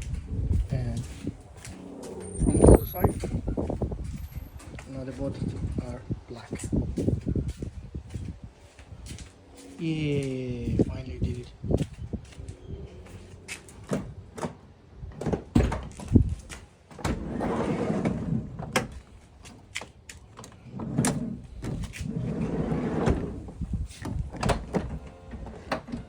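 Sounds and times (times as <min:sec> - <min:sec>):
sliding door running along track: 0:01.5 - 0:04.6, 0:17.0 - 0:18.9, 0:20.6 - 0:26.0.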